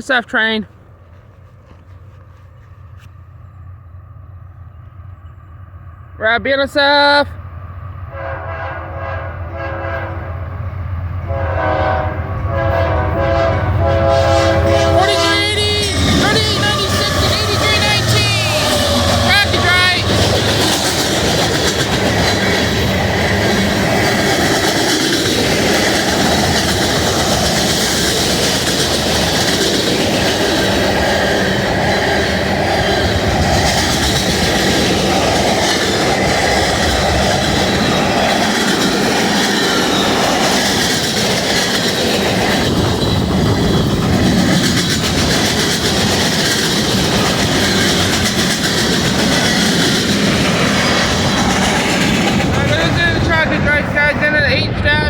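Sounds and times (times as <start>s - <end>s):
freight train passing: 0.0s - 55.0s.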